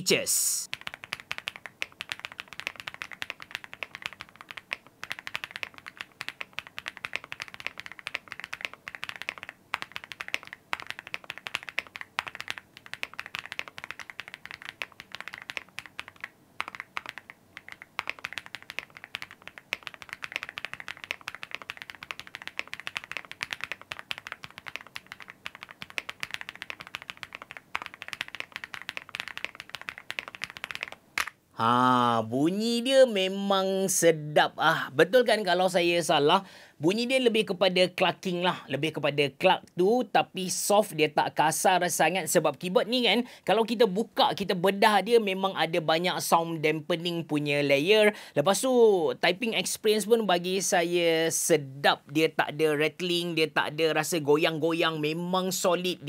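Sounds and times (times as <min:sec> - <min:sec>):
mechanical keyboard typing: 0:00.7 - 0:31.0.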